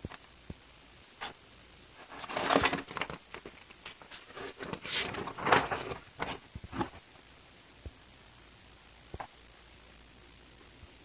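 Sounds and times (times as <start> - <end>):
paper pages rustling: 2.0 - 7.0.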